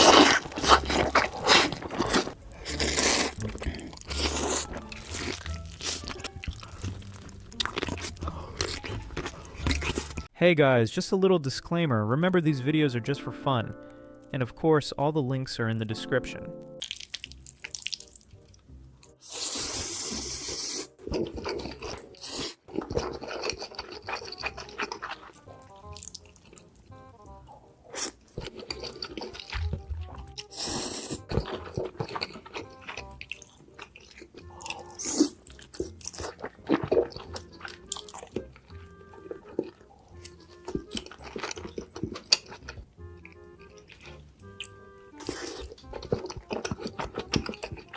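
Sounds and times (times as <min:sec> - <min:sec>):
chewing and crunching: 0:00.0 - 0:10.3, 0:16.8 - 0:47.9
noodle slurping: 0:00.0 - 0:10.3, 0:19.1 - 0:26.8, 0:27.5 - 0:42.9, 0:43.6 - 0:47.9
light background music: 0:00.0 - 0:47.9.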